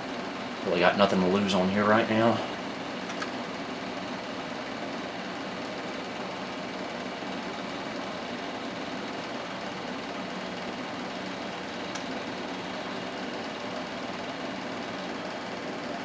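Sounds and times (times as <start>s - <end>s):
computer fans whirring: 0.0s - 16.0s.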